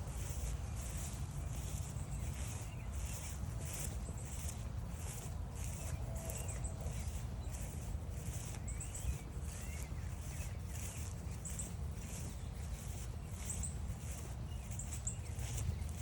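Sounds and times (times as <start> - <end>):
songbirds chirping and whistling: 0.0 - 16.0
steady low rumble: 0.0 - 16.0.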